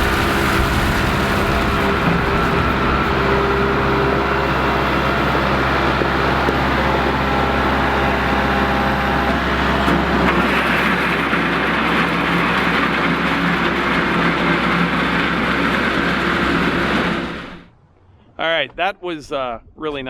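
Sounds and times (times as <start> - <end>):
tractor diesel engine running: 0.0 - 17.7.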